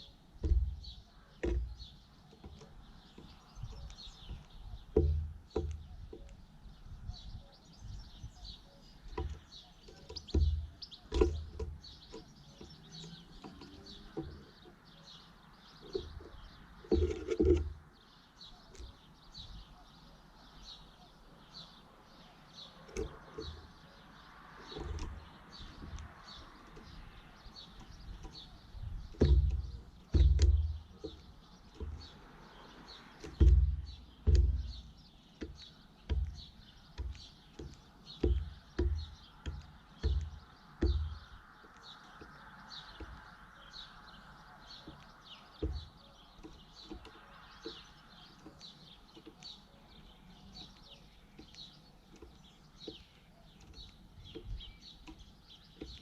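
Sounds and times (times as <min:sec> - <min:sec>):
dull low thumps: 0:00.0 - 0:08.5, 0:33.3 - 0:43.4
small birds chirping: 0:00.0 - 0:56.0.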